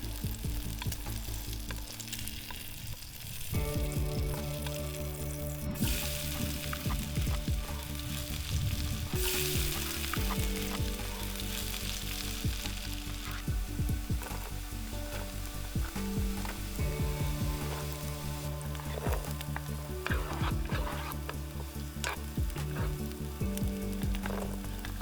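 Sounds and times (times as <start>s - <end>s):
seafood fried rice sizzling in pan: 0.0s - 25.0s
spatula scraping a pan: 14.2s - 25.0s.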